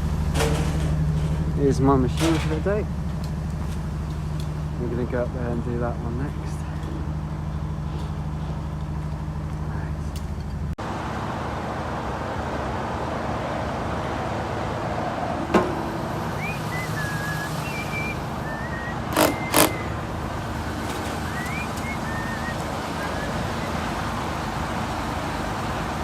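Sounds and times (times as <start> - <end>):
engine running: 0.0 - 26.0
short loud bursts: 15.9 - 20.0.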